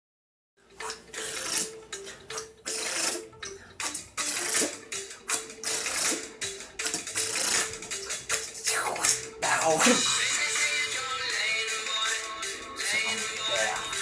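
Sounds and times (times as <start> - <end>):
person making hissing mouth sounds: 0.8 - 1.8, 2.7 - 3.2, 3.8 - 10.6.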